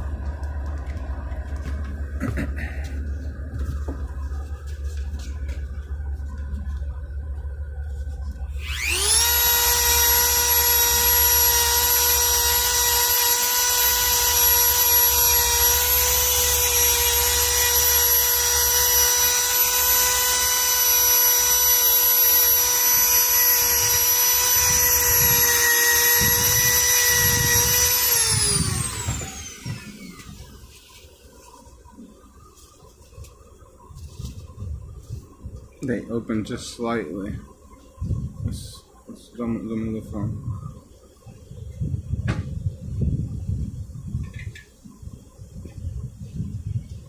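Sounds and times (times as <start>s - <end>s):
rotary tool whining: 3.0s - 34.6s.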